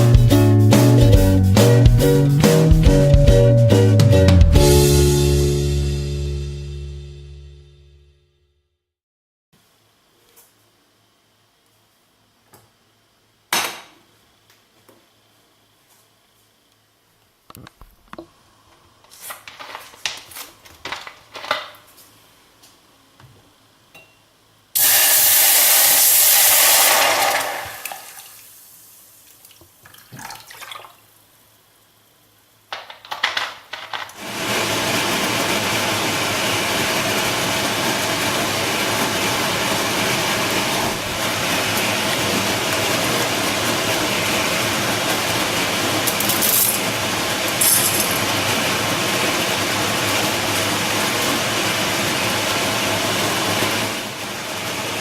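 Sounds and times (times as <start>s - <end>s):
water gushing: 24.8s - 31.2s
running water: 29.2s - 31.1s.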